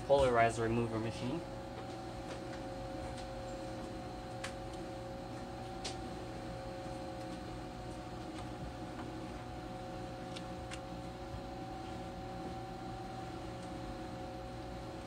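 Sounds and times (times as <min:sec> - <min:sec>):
machinery humming: 0:00.0 - 0:15.0.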